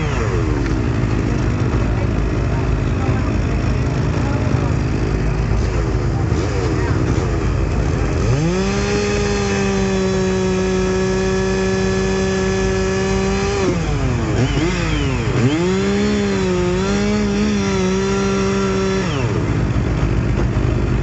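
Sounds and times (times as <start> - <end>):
chainsaw revving: 0.0 - 21.0.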